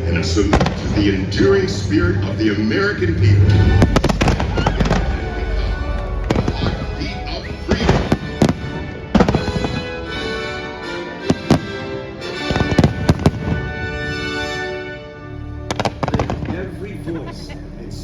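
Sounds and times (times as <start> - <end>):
fireworks bangs: 3.8 - 9.9.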